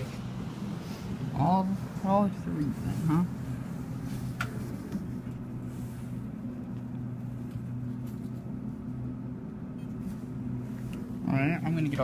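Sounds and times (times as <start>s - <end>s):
elevator hum: 0.0s - 11.8s.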